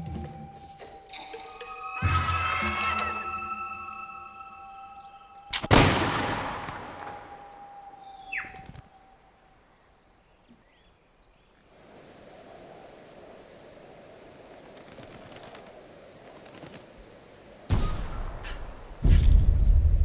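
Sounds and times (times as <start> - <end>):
held music tones: 0.0 - 9.3
falling bird-like whistle: 0.0 - 9.4, 17.7 - 19.7
faint bird chirps: 0.0 - 11.6
musket shot echoing: 5.5 - 8.4.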